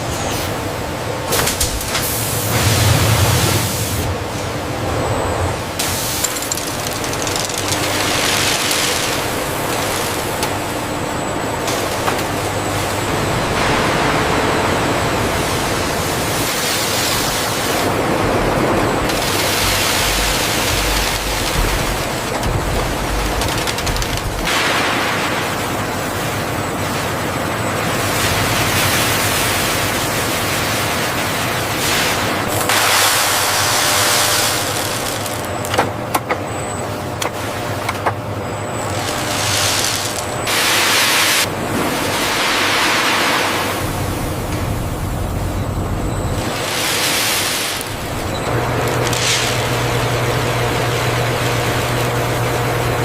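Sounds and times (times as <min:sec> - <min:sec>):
industrial machinery rushing: 0:01.5 - 0:26.0, 0:38.4 - 0:53.0.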